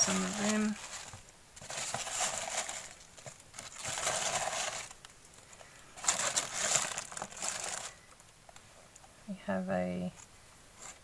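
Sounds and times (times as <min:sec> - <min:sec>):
packing peanuts rustling: 0:00.0 - 0:08.3.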